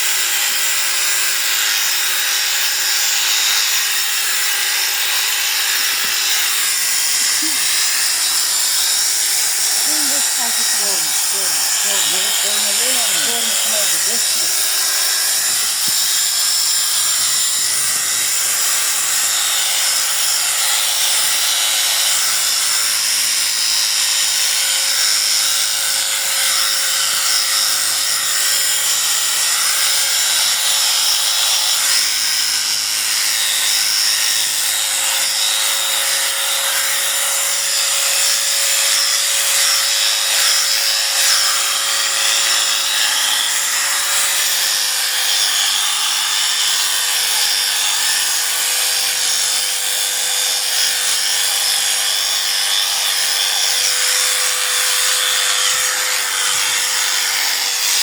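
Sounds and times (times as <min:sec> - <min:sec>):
electric sheep shears buzzing: 0:00.0 - 0:58.0.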